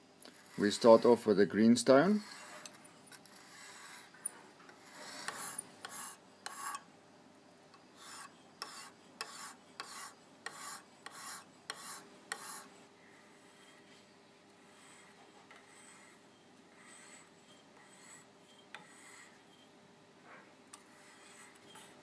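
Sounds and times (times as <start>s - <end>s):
hone stone scraping knife blade: 0.3s - 1.2s, 2.1s - 6.9s, 8.0s - 12.7s, 14.9s - 19.7s, 20.7s - 22.0s.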